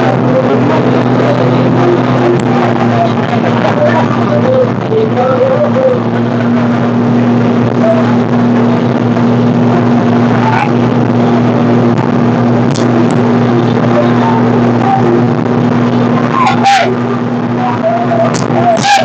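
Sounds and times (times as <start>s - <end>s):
loud rushing noise: 0.0s - 19.0s
motor engine humming: 0.0s - 19.0s.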